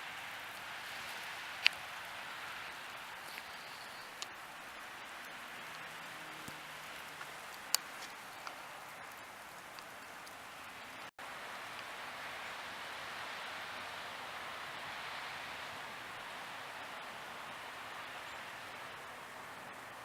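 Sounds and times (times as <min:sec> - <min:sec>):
hiss of heavy snow falling: 0:00.0 - 0:20.0
sharp ticks: 0:02.9 - 0:10.5.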